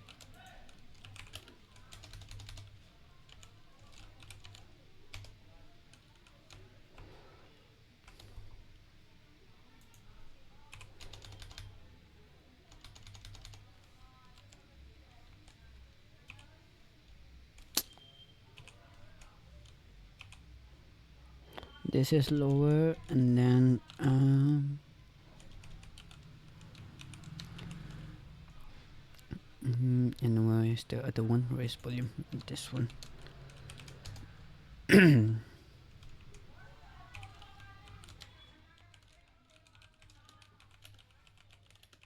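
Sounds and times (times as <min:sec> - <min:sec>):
keyboard typing clicks: 0:00.1 - 0:05.3, 0:10.7 - 0:11.7.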